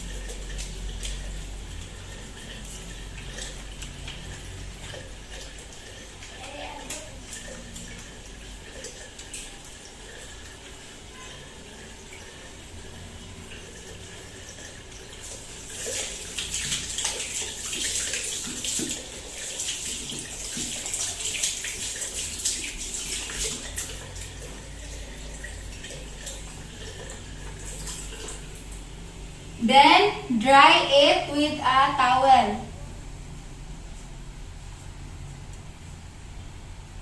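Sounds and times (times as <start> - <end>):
tap water running and splashing: 0.0 - 29.6.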